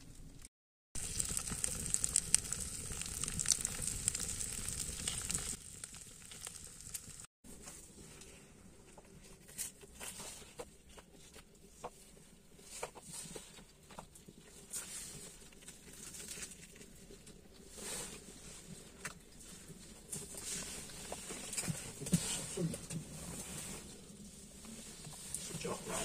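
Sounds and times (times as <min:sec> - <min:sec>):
food sizzling in a pan: 0:01.0 - 0:07.3.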